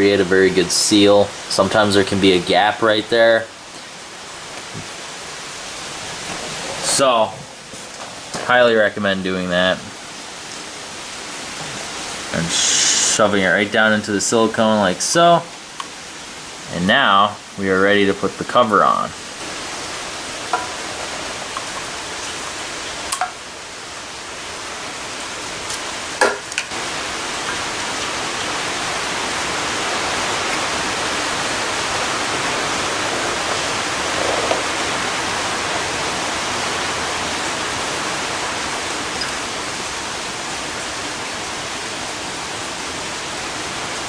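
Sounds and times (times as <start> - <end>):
steady rushing noise: 26.7 - 38.5.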